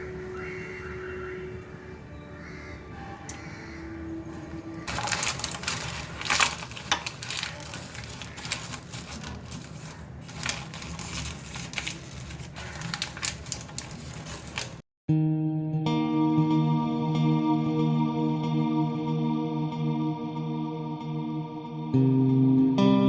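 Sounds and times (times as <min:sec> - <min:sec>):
irregular clicks and clatter: 0:04.8 - 0:14.8.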